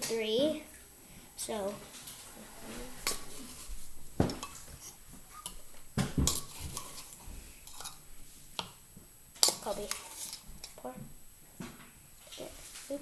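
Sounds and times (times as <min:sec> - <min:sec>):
spoons and cups clinking: 0:06.2 - 0:08.0.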